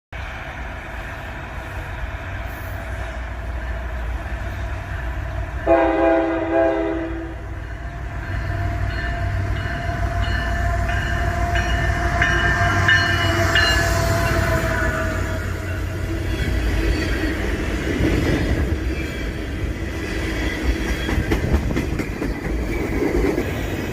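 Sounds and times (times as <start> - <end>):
freight train rumbling past: 0.1 - 23.9
train horn blast: 5.6 - 7.6.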